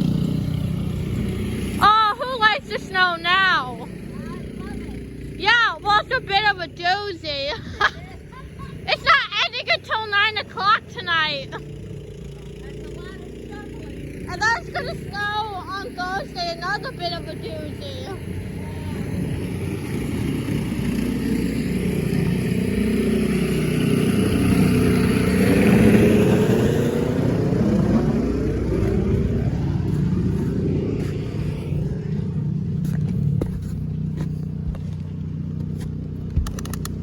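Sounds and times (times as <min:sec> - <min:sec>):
engine running: 0:00.0 - 0:37.0
sharp clicks: 0:36.3 - 0:37.0.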